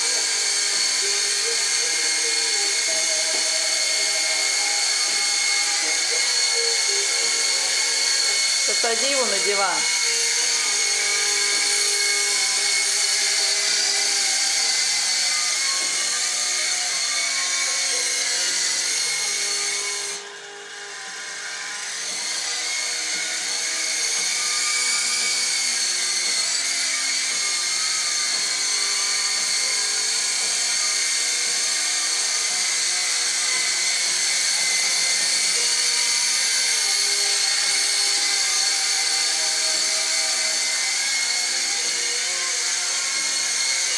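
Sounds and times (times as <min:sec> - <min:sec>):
toy helicopter motor whine: 0:00.0 - 0:43.9.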